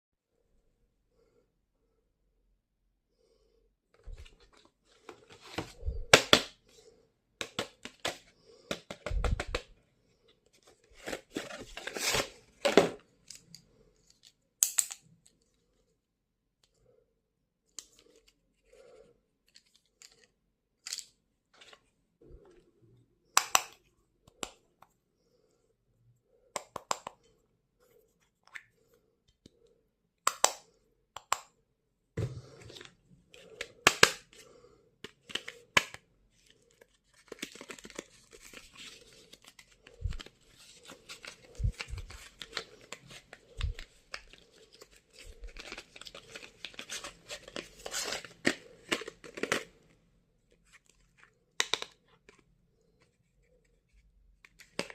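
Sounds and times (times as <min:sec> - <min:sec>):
packaging rustling and tearing: 0:10.9 - 0:13.0, 0:36.4 - 0:49.7.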